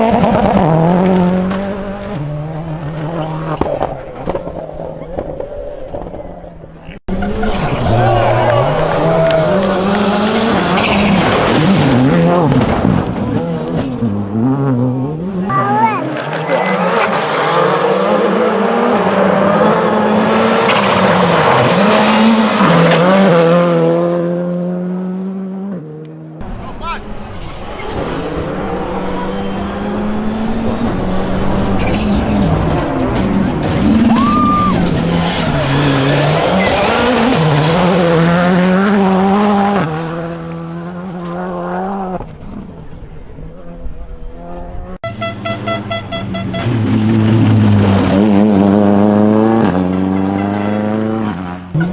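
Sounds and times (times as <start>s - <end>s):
rally car engine revving: 0.0s - 51.9s
tyres sliding on gravel: 6.5s - 14.5s, 15.3s - 23.2s, 26.4s - 43.1s, 46.4s - 49.0s.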